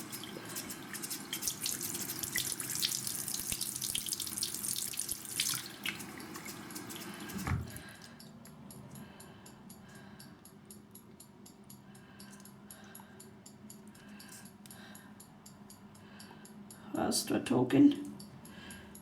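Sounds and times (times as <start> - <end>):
tap water running into sink: 0.0 - 7.8.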